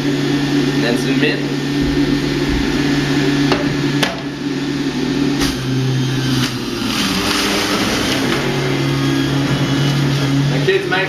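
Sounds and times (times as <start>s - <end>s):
electric juicer motor humming: 0.0s - 11.0s
food knocking in juicer chute: 1.6s - 10.2s.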